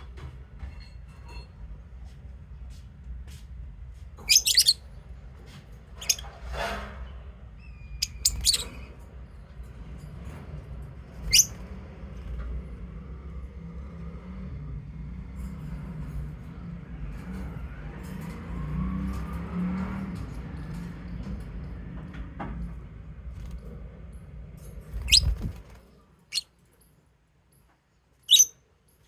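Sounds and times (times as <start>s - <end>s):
lovebird chirping: 4.3s - 4.8s, 7.6s - 8.8s, 11.3s - 11.5s, 25.0s - 25.6s, 28.3s - 28.6s.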